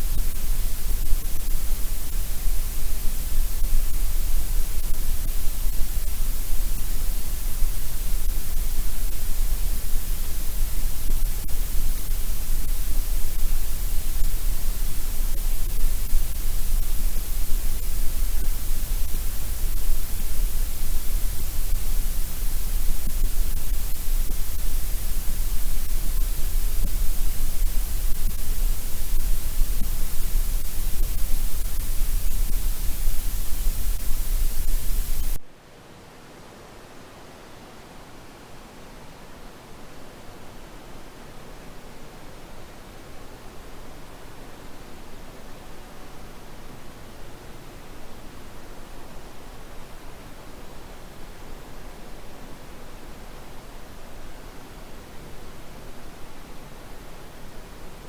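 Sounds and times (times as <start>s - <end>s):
white noise hiss: 0.0s - 58.0s.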